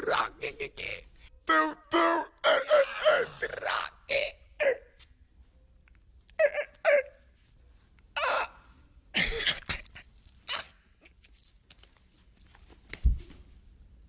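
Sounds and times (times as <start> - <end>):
man making barking noises: 0.0 - 4.9, 6.4 - 7.2.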